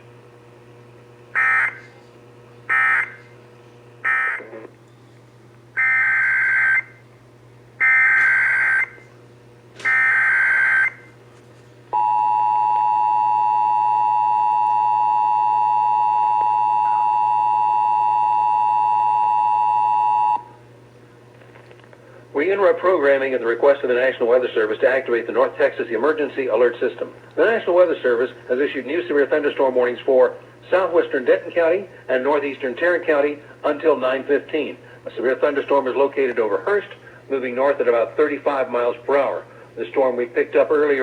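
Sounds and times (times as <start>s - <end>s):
two-tone attention signal: 2.7s - 3.2s, 12.0s - 20.5s.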